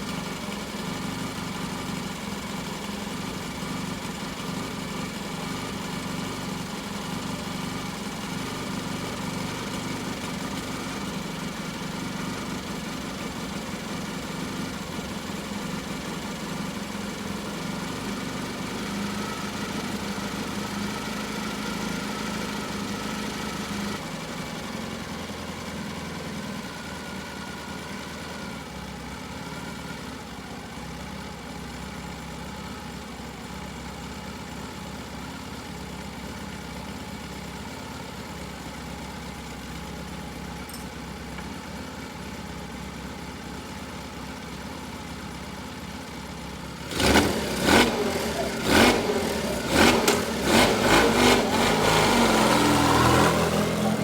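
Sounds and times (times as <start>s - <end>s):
motorcycle engine running: 0.0s - 54.0s.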